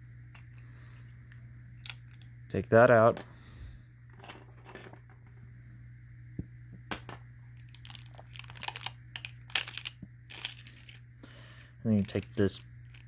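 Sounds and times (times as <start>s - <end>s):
steady low hum: 0.0s - 13.0s
plastic parts clicking: 7.6s - 11.0s, 12.0s - 13.0s
crinkling rustles: 7.6s - 13.0s.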